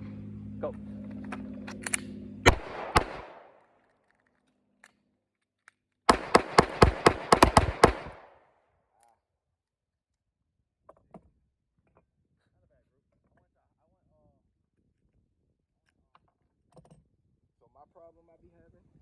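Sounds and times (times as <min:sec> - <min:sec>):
handgun shots: 0:01.7 - 0:03.6, 0:06.1 - 0:08.4.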